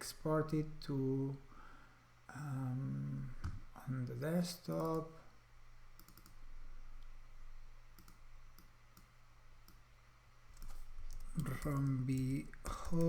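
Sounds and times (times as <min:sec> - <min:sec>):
faint low hum: 0:00.0 - 0:13.0
mouse and keyboard clicks: 0:06.0 - 0:06.4, 0:10.5 - 0:13.0.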